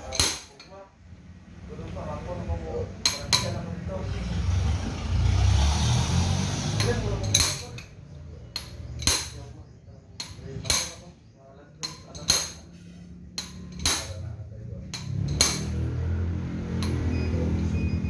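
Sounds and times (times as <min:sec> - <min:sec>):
metal-on-metal taps and clinks: 0:00.0 - 0:00.8, 0:03.0 - 0:03.7, 0:06.8 - 0:09.6, 0:10.2 - 0:11.2, 0:11.8 - 0:16.0, 0:16.7 - 0:17.7.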